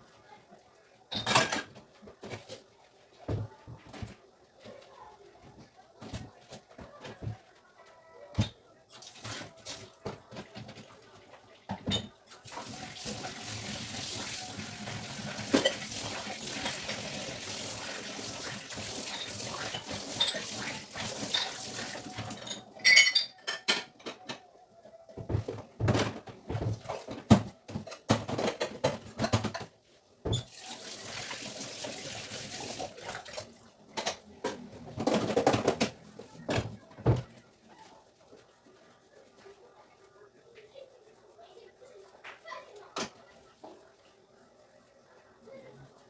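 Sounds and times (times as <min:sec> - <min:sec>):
dishes and utensils clattering: 0:01.1 - 0:02.6, 0:11.7 - 0:24.5, 0:25.2 - 0:31.3, 0:31.9 - 0:37.2
water running: 0:12.4 - 0:22.7, 0:30.4 - 0:33.7.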